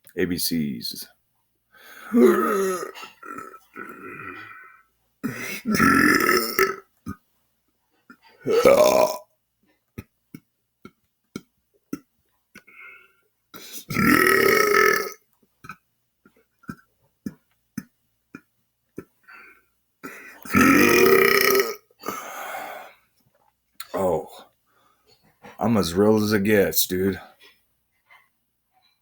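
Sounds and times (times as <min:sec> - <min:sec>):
man belching: 0:02.1 - 0:07.2, 0:08.5 - 0:09.3, 0:13.8 - 0:15.8, 0:20.0 - 0:22.2.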